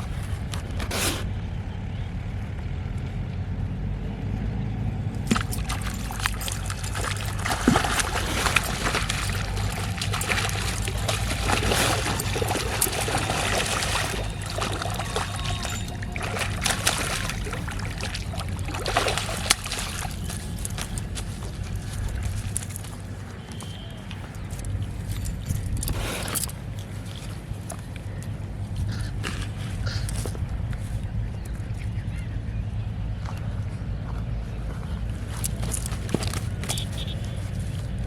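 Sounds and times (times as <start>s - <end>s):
water splashing and trickling: 5.2s - 30.5s, 35.2s - 38.0s.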